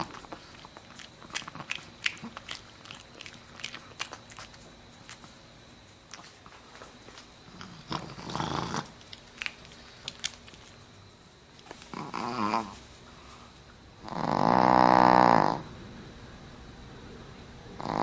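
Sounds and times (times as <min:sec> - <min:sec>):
dog snoring: 0:07.5 - 0:08.9, 0:11.9 - 0:12.8, 0:14.0 - 0:15.7, 0:17.7 - 0:18.0.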